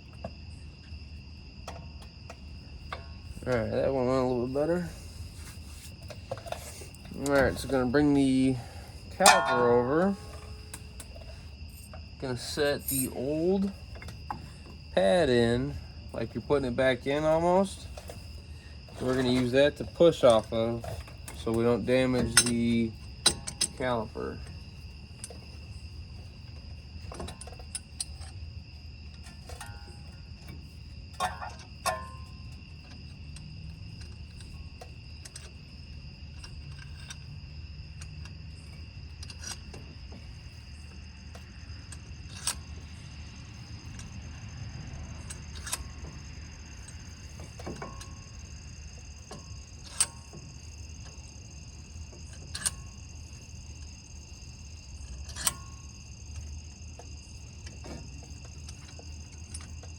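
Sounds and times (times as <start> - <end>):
metallic clicks of tools: 9.2 - 11.4, 20.2 - 24.6, 31.2 - 35.5, 38.0 - 39.8, 41.4 - 42.6, 45.2 - 46.2, 52.2 - 53.0, 55.2 - 56.5.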